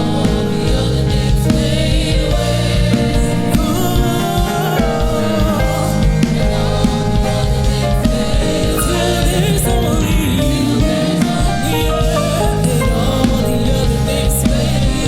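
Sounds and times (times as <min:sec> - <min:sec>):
gospel song with singing: 0:00.0 - 0:15.0
steady low beat: 0:00.0 - 0:15.0.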